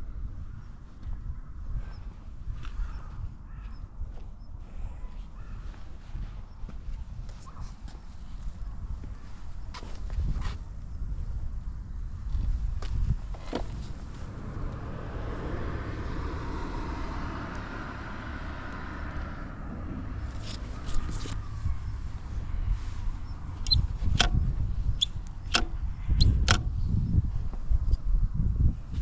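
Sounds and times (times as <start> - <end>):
sharp clicks: 23.6 - 24.4, 25.0 - 26.7.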